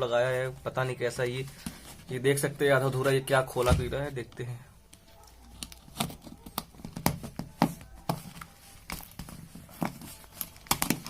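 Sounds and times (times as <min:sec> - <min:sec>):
cardboard parcel being opened: 0:05.4 - 0:11.0.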